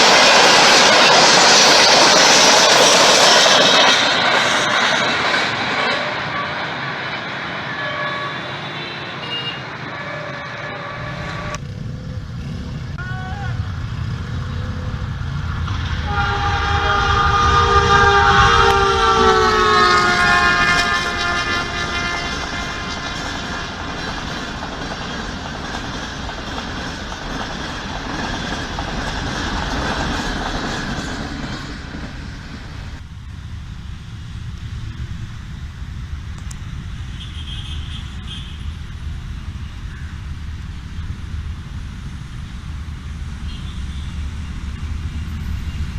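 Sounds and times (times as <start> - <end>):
train rumbling past: 0.0 - 45.9
multi-tone train horn: 5.6 - 6.9, 7.6 - 11.6, 15.9 - 24.4, 37.0 - 38.9, 43.4 - 44.5.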